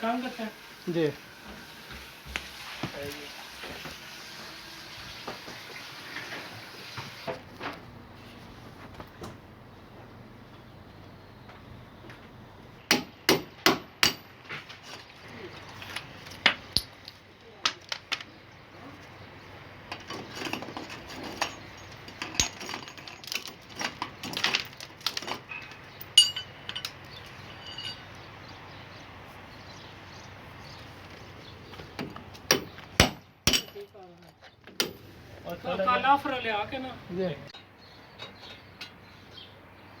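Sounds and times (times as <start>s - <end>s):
sharp knocks on metal: 12.9s - 14.3s, 32.0s - 33.8s
ringing metallic clink: 26.0s - 28.2s.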